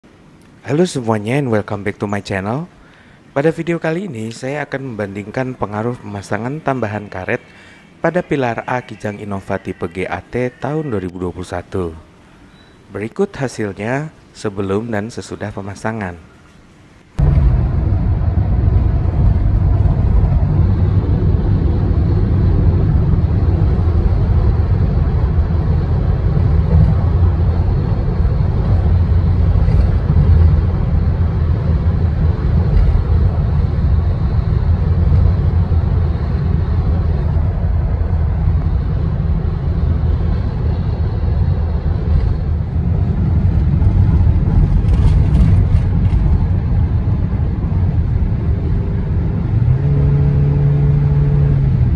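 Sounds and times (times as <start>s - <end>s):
road noise rumble in car cabin: 17.2s - 51.9s
wind rushing past car: 17.2s - 51.9s.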